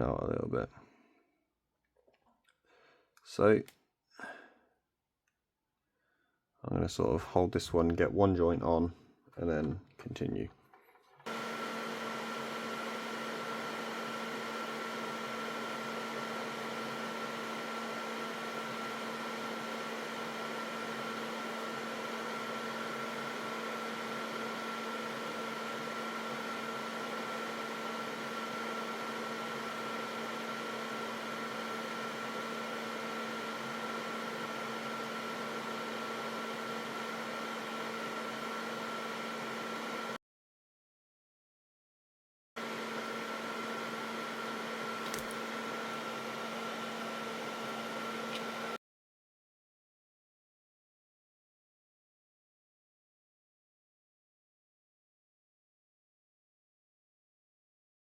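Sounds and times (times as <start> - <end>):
small machine humming: 11.2 - 40.2, 42.6 - 48.8.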